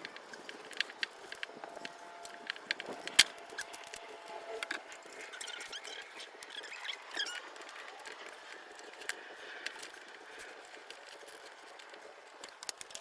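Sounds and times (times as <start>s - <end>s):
short squeaks: 1.8s - 8.3s.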